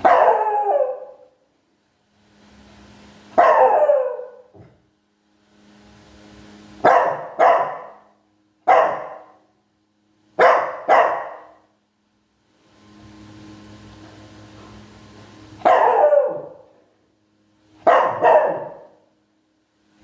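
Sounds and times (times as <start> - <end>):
small dog barking: 0.0 - 1.3, 3.4 - 4.7, 6.8 - 9.4, 10.4 - 11.6, 15.6 - 16.7, 17.8 - 19.0.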